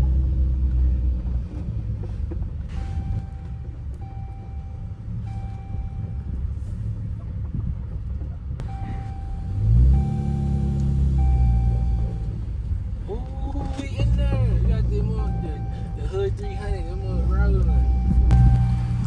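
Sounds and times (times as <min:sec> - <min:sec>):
car engine and road rumble: 0:00.0 - 0:19.0
electronic warning chime: 0:02.8 - 0:06.4, 0:08.6 - 0:12.3, 0:15.2 - 0:19.0.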